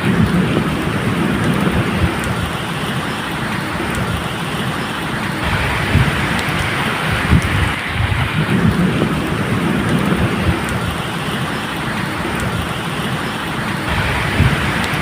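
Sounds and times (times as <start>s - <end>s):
rolling thunder: 0.0s - 3.0s, 5.4s - 12.7s, 13.8s - 15.0s
steady rain falling: 0.0s - 15.0s.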